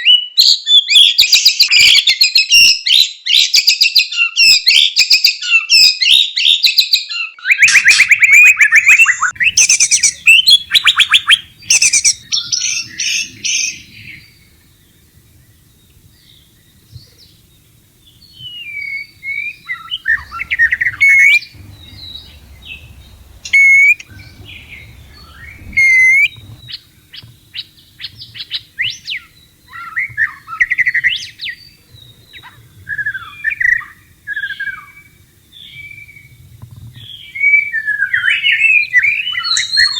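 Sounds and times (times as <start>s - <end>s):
bird whistles and clicks: 7.6s - 14.5s, 18.1s - 33.8s, 37.0s - 39.9s
bird chattering song: 7.6s - 36.4s, 37.0s - 39.9s.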